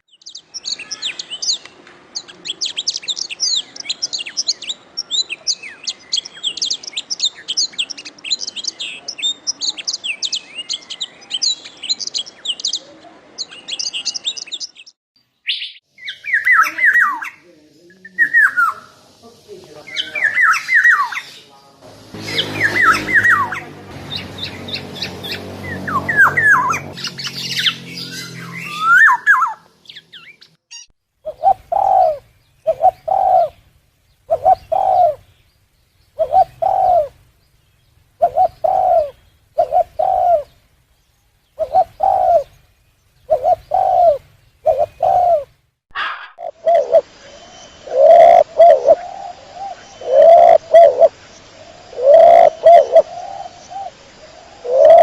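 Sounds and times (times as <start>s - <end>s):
songbird chirping: 0.0s - 55.0s
dove cooing: 31.3s - 33.6s, 34.3s - 35.3s, 36.2s - 37.2s, 38.2s - 40.5s, 41.6s - 42.6s, 43.3s - 45.5s, 46.2s - 47.1s, 47.8s - 51.1s, 51.9s - 55.0s.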